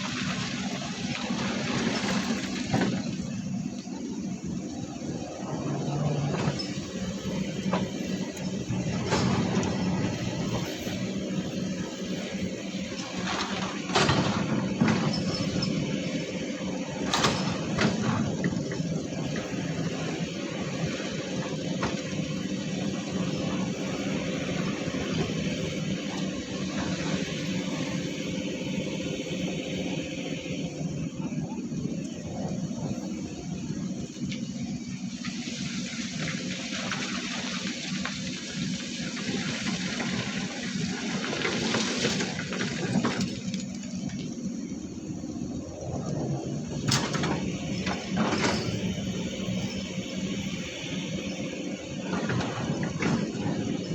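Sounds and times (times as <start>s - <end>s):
rushing splashing water: 0.0s - 3.3s, 35.2s - 43.8s
heavy diesel machinery running: 0.0s - 53.9s.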